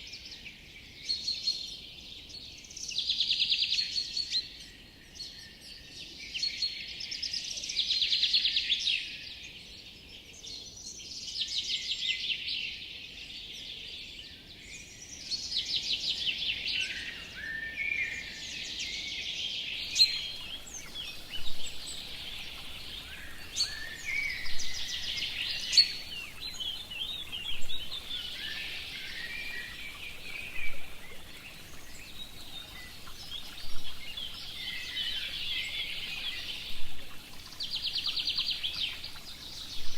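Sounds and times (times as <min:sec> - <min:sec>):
faint background hiss: 0:19.3 - 0:39.9
songbirds trilling: 0:19.8 - 0:39.9.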